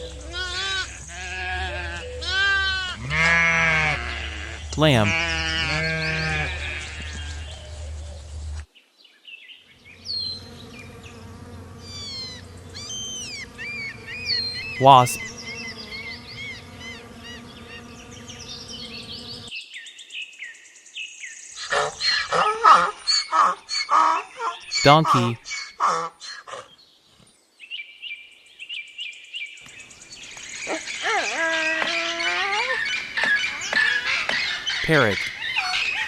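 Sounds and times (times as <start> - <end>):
wasp buzzing: 10.0 - 19.5.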